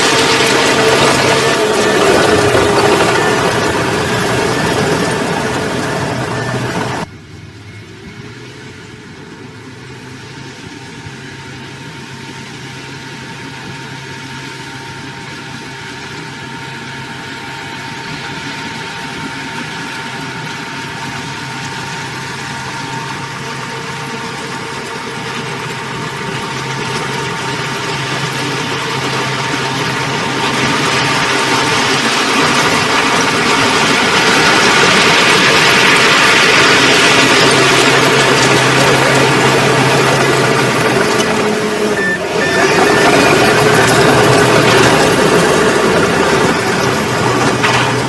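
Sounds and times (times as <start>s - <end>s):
diesel engine running: 0.0s - 48.0s.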